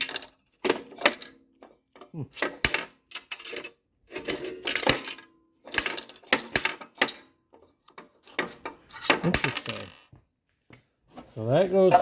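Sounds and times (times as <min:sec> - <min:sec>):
coins clinking and rattling: 0:00.0 - 0:01.4, 0:02.4 - 0:10.0.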